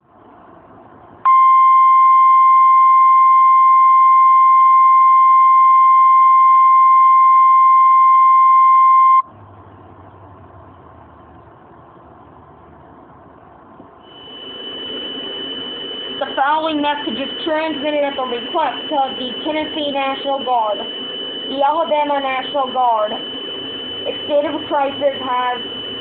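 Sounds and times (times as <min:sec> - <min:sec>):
steady single-pitched beep: 0:01.3 - 0:09.3, 0:14.0 - 0:26.0.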